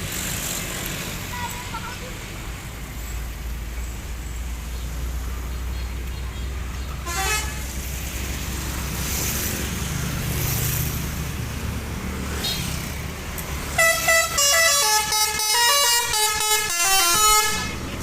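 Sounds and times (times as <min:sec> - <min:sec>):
bus engine: 0:00.0 - 0:18.0
traffic noise: 0:00.0 - 0:18.0
multi-tone bus horn melody: 0:07.0 - 0:07.8, 0:13.7 - 0:18.0.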